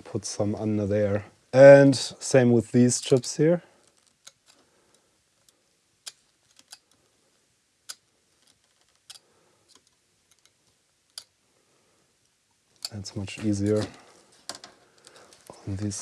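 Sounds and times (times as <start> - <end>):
small clicks and taps: 7.9 - 11.3.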